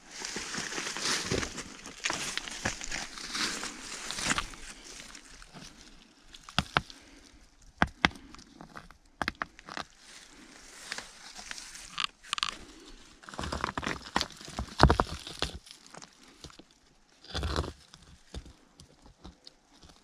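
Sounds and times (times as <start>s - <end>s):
footsteps crunching on loose rock: 0.0s - 16.7s
stones knocking together: 6.4s - 7.0s, 7.8s - 9.9s, 13.3s - 16.6s.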